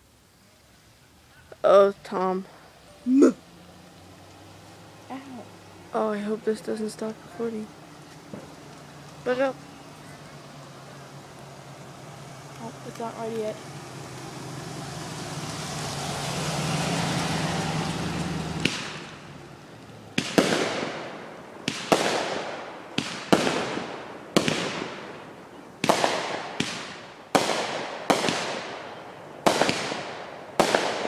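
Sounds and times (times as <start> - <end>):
firework crack: 5.1 - 31.0
fireworks booming: 8.3 - 8.6, 18.6 - 19.3, 20.1 - 31.0.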